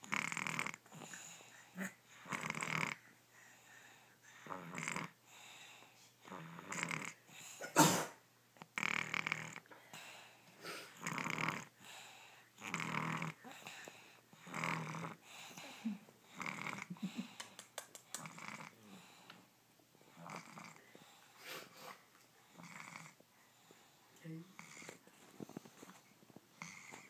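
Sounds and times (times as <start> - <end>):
baby snoring: 0.0 - 3.0, 4.3 - 5.2, 6.2 - 7.2, 8.6 - 9.7, 10.9 - 11.8, 12.6 - 13.8, 14.4 - 17.2, 18.2 - 19.1, 20.1 - 20.8, 22.5 - 23.2, 24.5 - 27.0.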